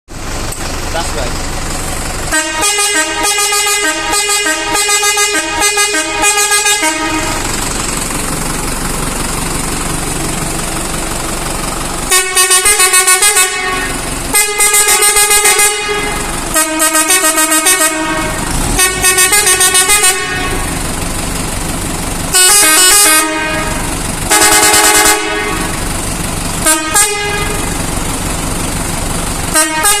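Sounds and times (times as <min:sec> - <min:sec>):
air horn blasts: 0:02.3 - 0:07.6, 0:12.0 - 0:20.9, 0:22.3 - 0:25.9, 0:26.6 - 0:27.8, 0:29.5 - 0:30.0.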